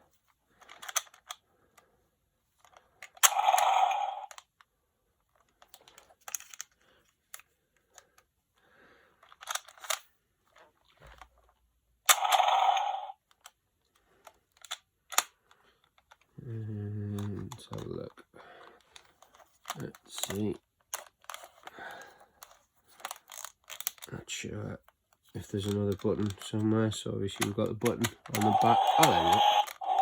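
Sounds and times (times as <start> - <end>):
plastic toy clicks and knocks: 0.6 - 1.4, 2.6 - 4.5, 5.4 - 8.0, 9.2 - 10.1, 12.1 - 13.6, 14.2 - 16.3, 19.0 - 21.7, 22.4 - 24.1, 25.4 - 30.0.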